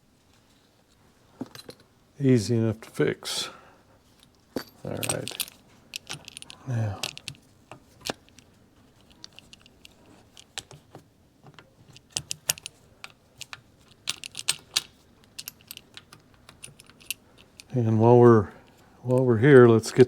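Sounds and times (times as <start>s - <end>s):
small metal parts clicking: 4.2s - 10.8s, 11.5s - 17.8s.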